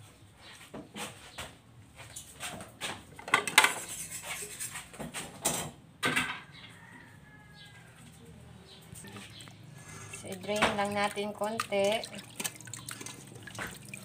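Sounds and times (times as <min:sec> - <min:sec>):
pots and pans clattering: 0:03.2 - 0:06.5.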